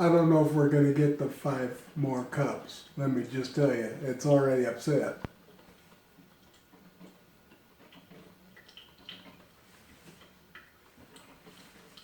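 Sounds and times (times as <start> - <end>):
low steady hum: 0.0 - 12.0
coffee maker ticks and drips: 5.1 - 12.0.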